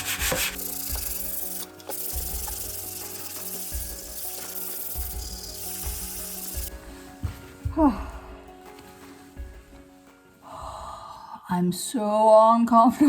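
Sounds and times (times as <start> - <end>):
sanding a wall: 0.0 - 6.7.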